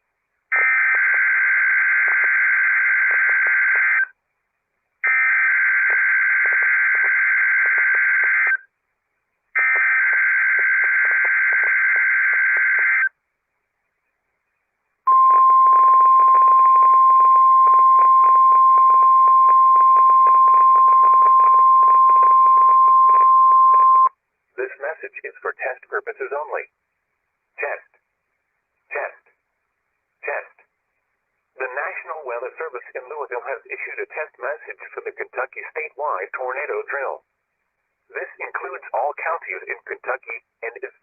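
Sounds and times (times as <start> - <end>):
steady warning alarm tone: 15.1 - 24.1.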